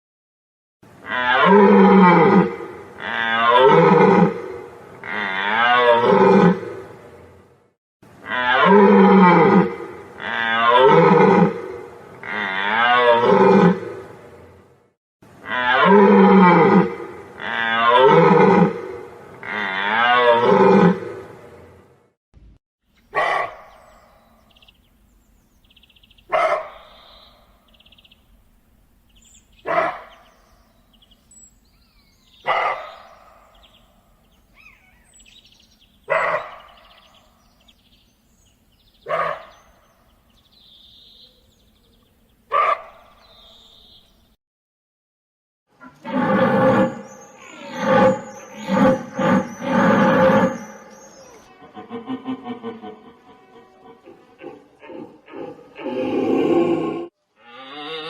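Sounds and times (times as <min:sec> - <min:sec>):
deer barking: 0:23.1 - 0:23.9, 0:26.3 - 0:27.0, 0:29.6 - 0:30.3, 0:32.4 - 0:33.5, 0:36.1 - 0:36.8, 0:39.0 - 0:39.6, 0:42.5 - 0:43.0
deer bellowing calls: 0:34.6 - 0:35.3.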